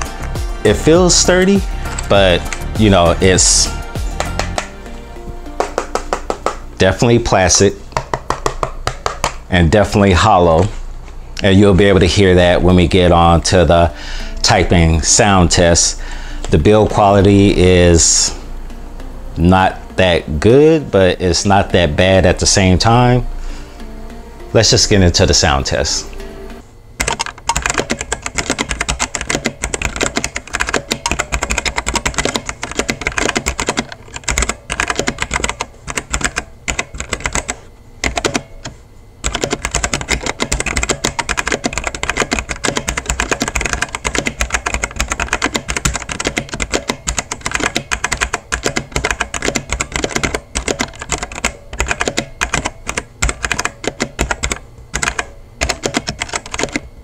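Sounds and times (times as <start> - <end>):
mechanical keyboard typing: 0.0 - 4.7, 27.0 - 56.9.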